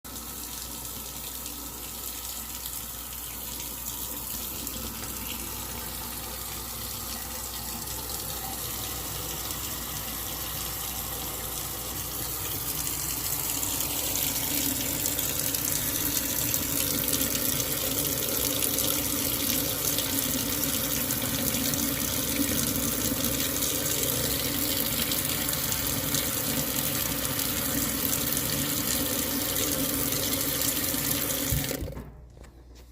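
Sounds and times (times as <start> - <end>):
tap running into sink: 31.0 - 32.2.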